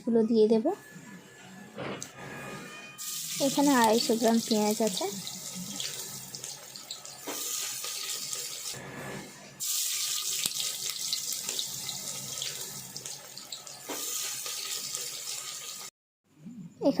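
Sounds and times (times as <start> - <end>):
onions sizzling in hot oil: 3.0 - 8.8, 9.6 - 15.9.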